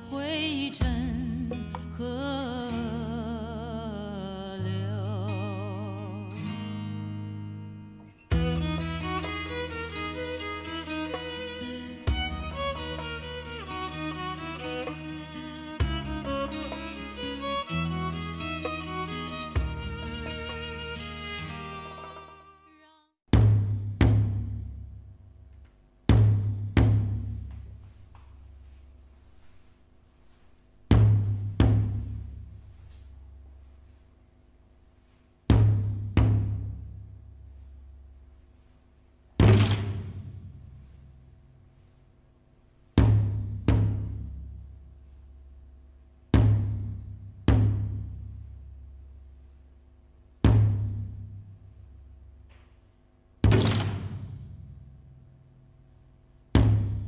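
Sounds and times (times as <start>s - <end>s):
deep booming drum strokes: 23.3s - 25.1s, 26.1s - 27.9s, 30.8s - 32.8s, 43.0s - 44.8s, 50.4s - 51.8s, 56.6s - 57.0s.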